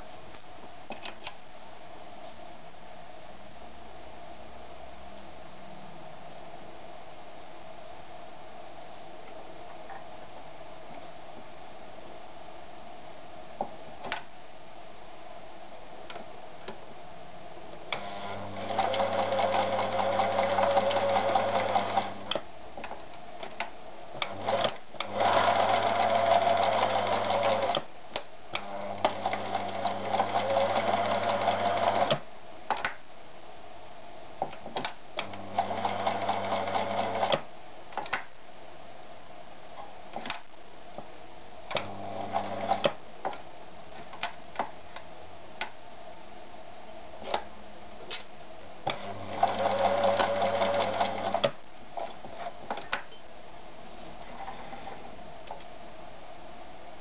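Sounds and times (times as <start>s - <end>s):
sewing machine motor hum: 17.9s - 22.3s, 24.2s - 27.8s, 28.6s - 32.1s, 35.2s - 37.4s, 48.9s - 51.5s.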